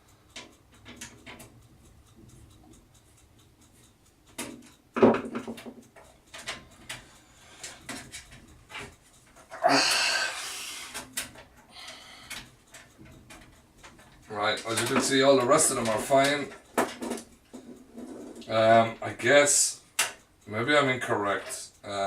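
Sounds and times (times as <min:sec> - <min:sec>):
person exhaling loudly: 0:09.6 - 0:11.0.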